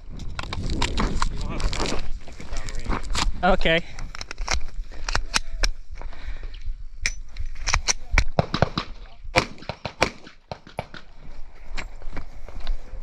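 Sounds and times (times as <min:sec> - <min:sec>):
pistol shots: 0:08.4 - 0:11.1.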